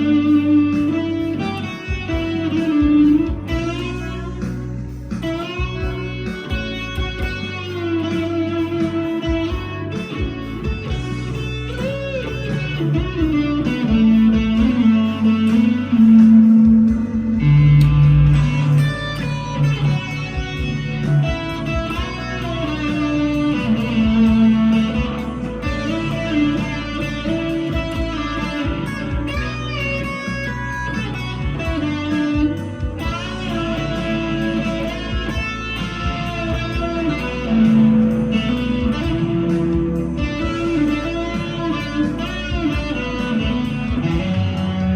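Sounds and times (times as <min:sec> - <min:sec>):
overdriven electric guitar lead: 0:00.0 - 0:44.9.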